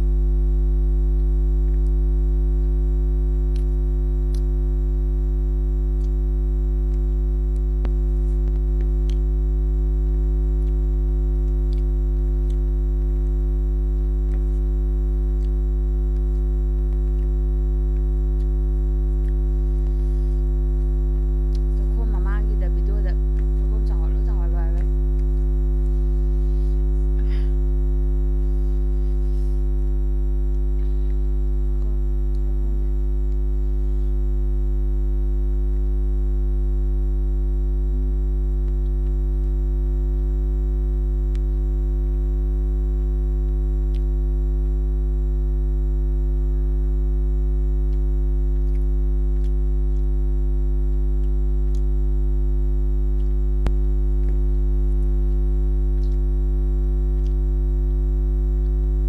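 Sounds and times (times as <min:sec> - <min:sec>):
loud electrical mains hum: 0:00.0 - 0:59.0.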